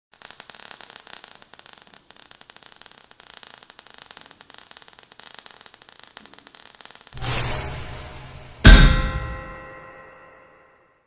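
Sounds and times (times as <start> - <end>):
steady hiss: 0.1 - 9.7
crackling static clicks: 0.4 - 7.2.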